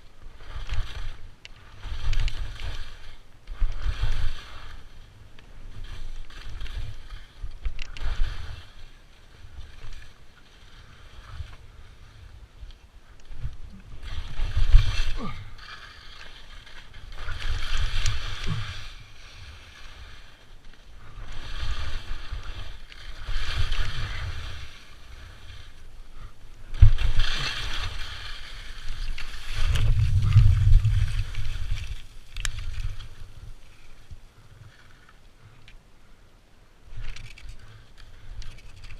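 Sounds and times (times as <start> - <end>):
skis swishing on snow: 0.0 - 35.1
wind rumble on microphone: 10.9 - 15.7, 16.8 - 35.5.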